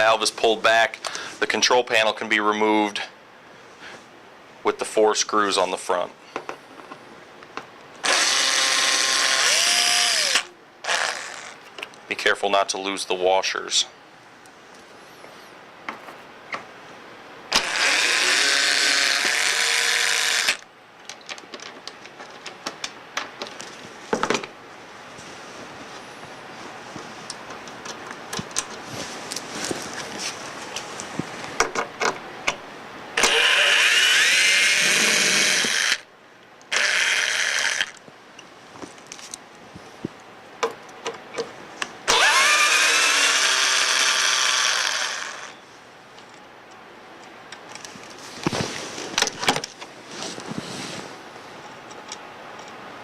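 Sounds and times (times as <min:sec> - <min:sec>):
cordless drill running: 0:08.0 - 0:11.6, 0:17.5 - 0:20.6, 0:33.2 - 0:36.0, 0:36.7 - 0:38.0, 0:42.1 - 0:45.5.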